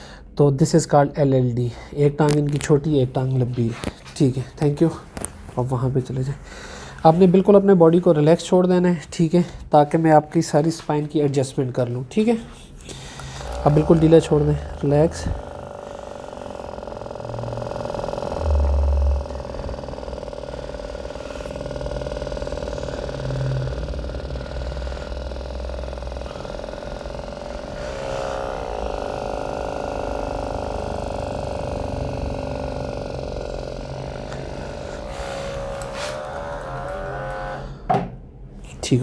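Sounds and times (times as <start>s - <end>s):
low rumble: 12.8s - 37.6s
motor humming: 12.8s - 37.9s.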